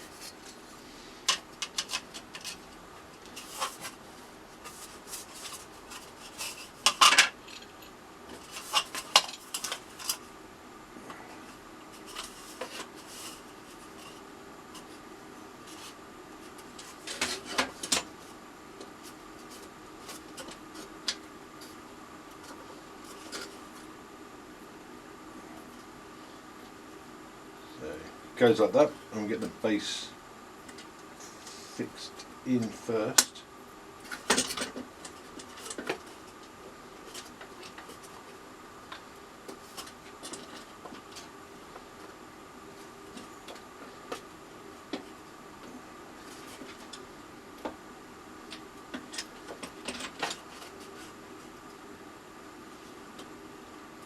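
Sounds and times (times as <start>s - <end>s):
wood pieces clattering on workbench: 4.6s - 10.2s.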